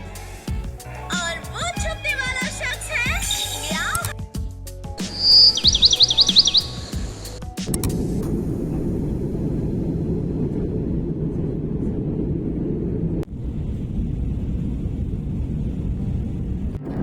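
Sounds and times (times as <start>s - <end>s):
low rumbling noise: 5.1s - 17.0s.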